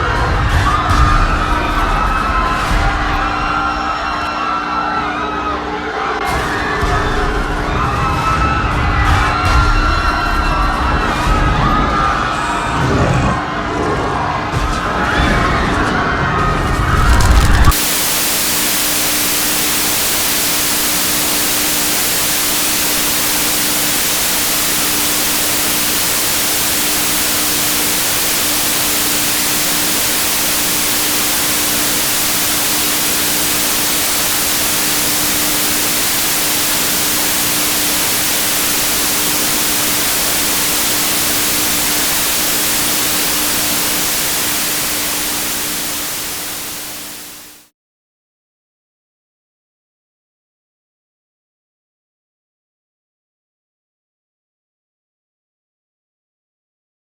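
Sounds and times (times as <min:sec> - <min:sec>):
loud static hiss: 0:16.8 - 0:47.7.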